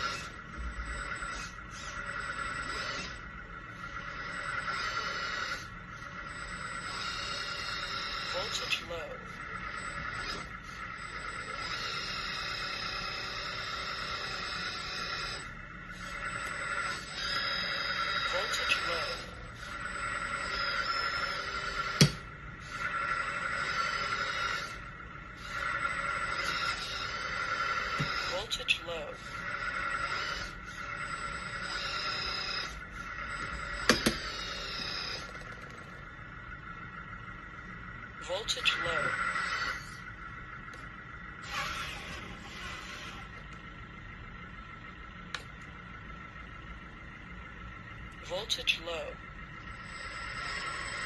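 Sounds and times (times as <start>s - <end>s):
hydraulic pump whining: 0.0s - 28.5s, 29.2s - 48.2s.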